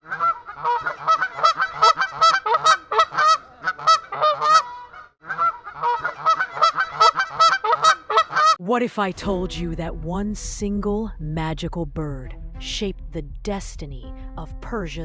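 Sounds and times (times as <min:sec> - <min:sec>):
bird honking calls: 0:00.0 - 0:08.6.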